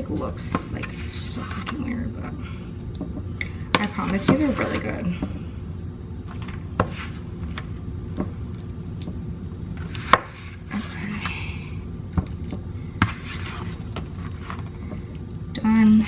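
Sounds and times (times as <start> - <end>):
utensil scraping: 0.0 - 2.1, 3.8 - 5.1, 6.4 - 7.2, 13.0 - 14.7.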